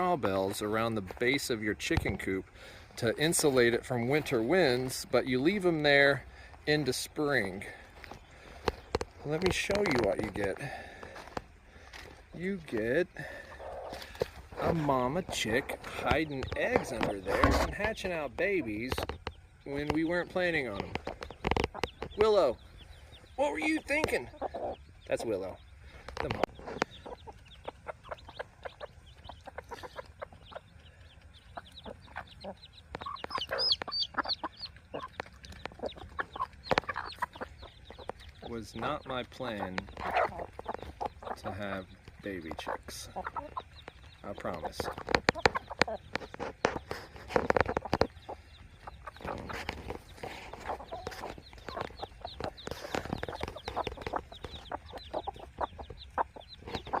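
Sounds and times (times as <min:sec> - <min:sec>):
chicks peeping: 0:00.0 - 0:57.0
hen clucking: 0:00.0 - 0:57.0.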